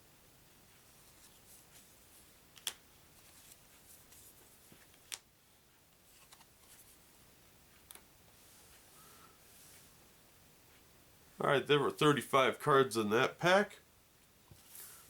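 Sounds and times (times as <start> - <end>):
playing cards rustling: 2.6 - 5.2, 6.0 - 7.0.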